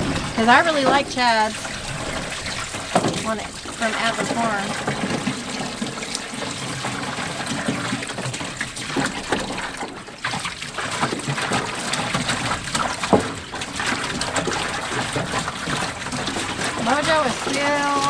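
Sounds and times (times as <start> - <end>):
water running from garden hose: 0.0 - 18.0.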